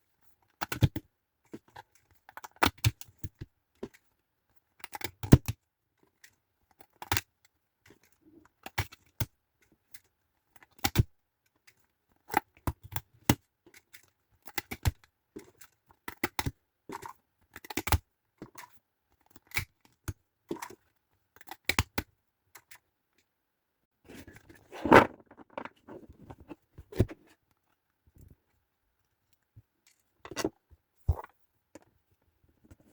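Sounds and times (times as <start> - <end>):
card game box being handled: 24.1 - 27.3.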